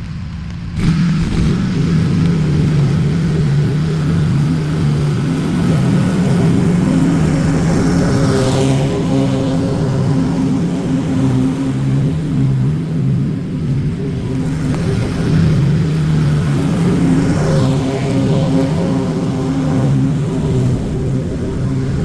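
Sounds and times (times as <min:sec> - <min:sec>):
small petrol engine running: 0:00.0 - 0:22.0.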